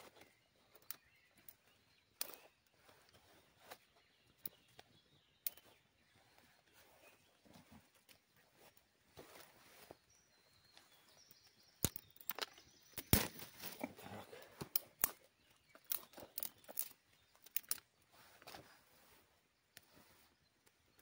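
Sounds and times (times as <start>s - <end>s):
branches rustling: 0.0s - 21.0s
dry twigs snapping: 11.8s - 13.9s, 14.6s - 17.9s.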